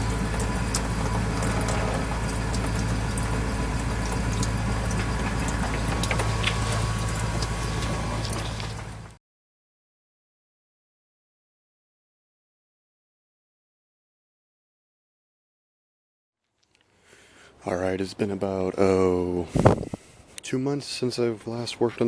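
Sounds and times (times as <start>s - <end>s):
low mechanical hum: 0.0s - 9.2s, 17.5s - 20.5s.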